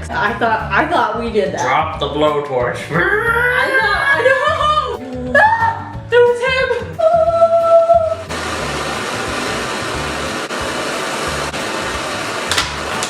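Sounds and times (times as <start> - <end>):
blowtorch flame hissing: 8.2 - 13.0.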